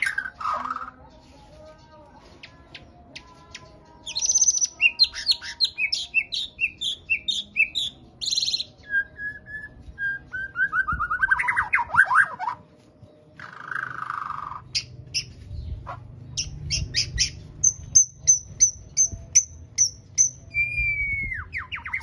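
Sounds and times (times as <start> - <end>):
songbird chirping: 0.0 - 22.0
bird whistling lower notes: 19.8 - 22.0.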